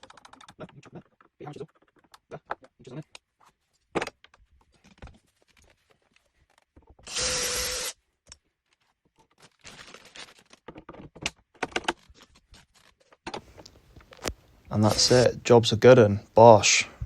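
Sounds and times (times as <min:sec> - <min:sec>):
small clicks and knocks: 0:00.0 - 0:07.0
cordless drill whine: 0:07.0 - 0:08.0.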